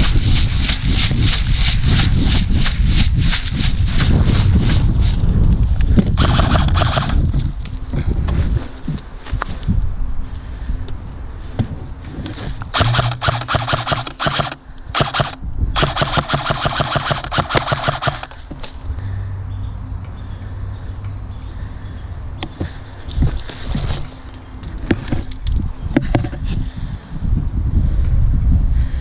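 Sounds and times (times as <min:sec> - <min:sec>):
airsoft rifle firing bursts: 0:05.8 - 0:07.6, 0:12.7 - 0:18.5.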